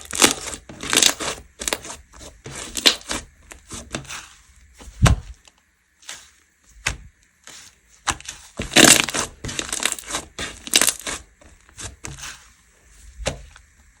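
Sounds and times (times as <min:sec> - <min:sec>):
hands squishing slime: 0:00.0 - 0:13.7.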